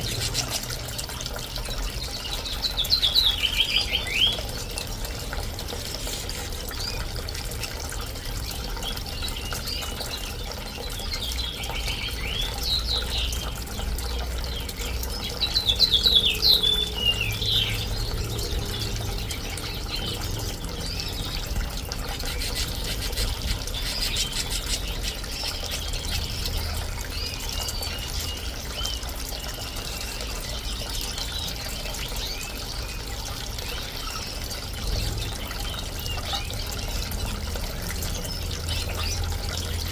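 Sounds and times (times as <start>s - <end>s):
fountain trickling: 0.0s - 39.9s
small birds chirping: 0.0s - 39.9s.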